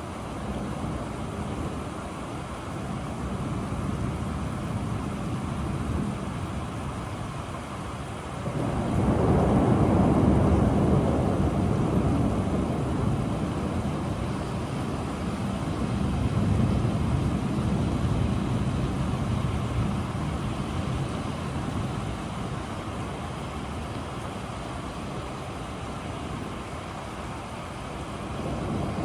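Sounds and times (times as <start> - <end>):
rain: 0.0 - 29.0
thunder rolling: 8.3 - 24.4, 28.2 - 29.0.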